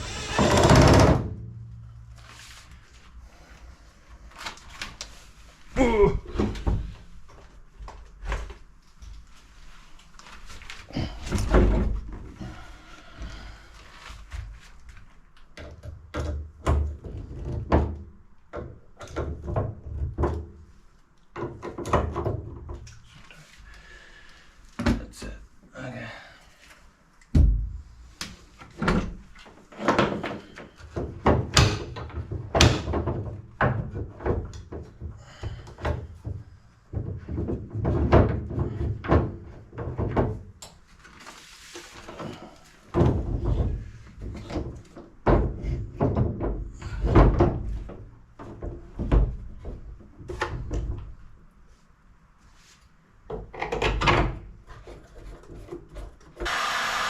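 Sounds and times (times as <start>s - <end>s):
irregular knocks and thuds: 27.3s - 27.9s, 28.7s - 40.5s, 42.9s - 51.2s.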